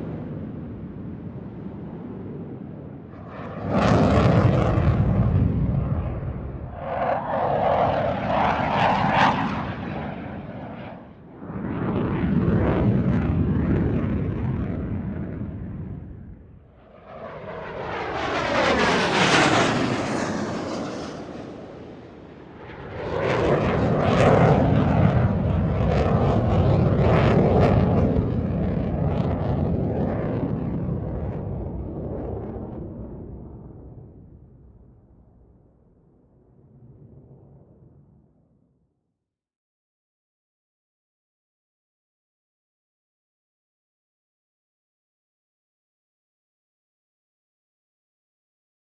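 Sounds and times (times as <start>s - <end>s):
military jet fly-by: 0.0s - 35.6s.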